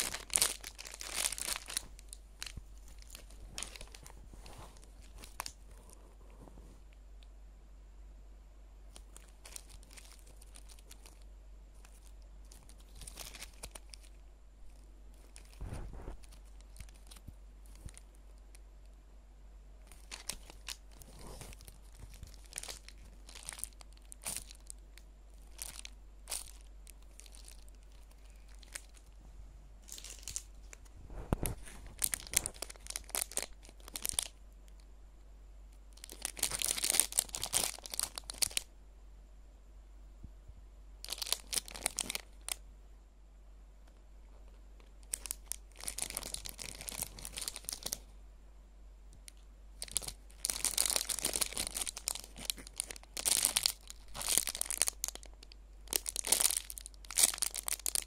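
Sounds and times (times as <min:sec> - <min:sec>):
plastic packaging crinkling: 0:00.0 - 0:06.0, 0:08.9 - 0:18.4, 0:19.8 - 0:29.2, 0:29.8 - 0:34.8, 0:35.9 - 0:38.7, 0:41.0 - 0:42.6, 0:44.8 - 0:48.0, 0:49.2 - 0:58.0.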